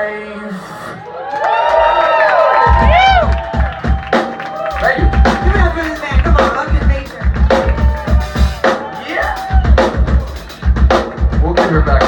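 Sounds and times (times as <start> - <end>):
kick drum and snare beat: 2.6 - 12.0
live rock band playing: 2.6 - 12.0.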